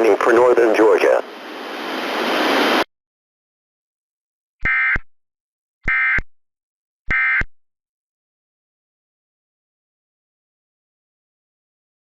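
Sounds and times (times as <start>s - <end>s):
radio hiss: 0.0s - 1.3s.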